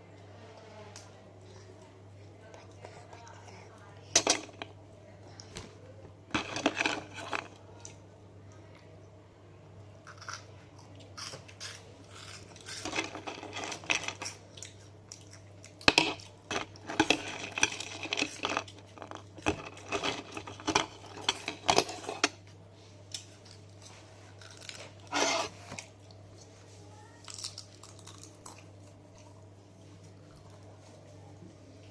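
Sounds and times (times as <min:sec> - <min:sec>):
spoon scraping a bowl: 0:25.0 - 0:25.6.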